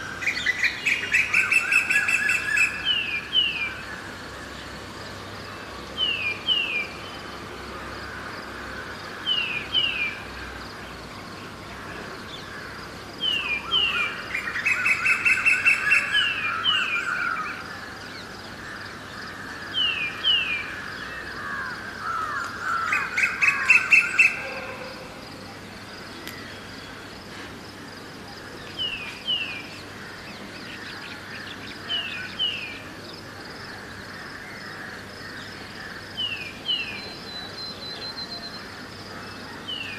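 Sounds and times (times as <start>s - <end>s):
distant birdsong: 0.0s - 39.9s.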